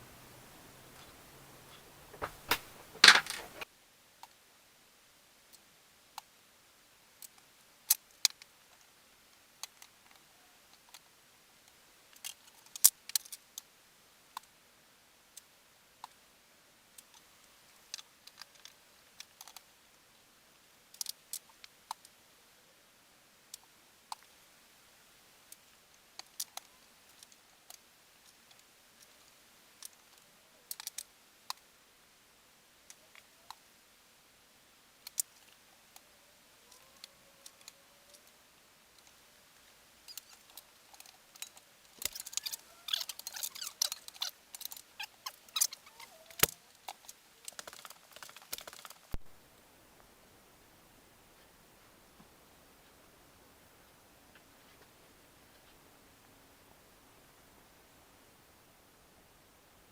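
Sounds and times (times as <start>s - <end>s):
sharp clicks and light taps: 0.0s - 3.6s, 46.4s - 49.3s.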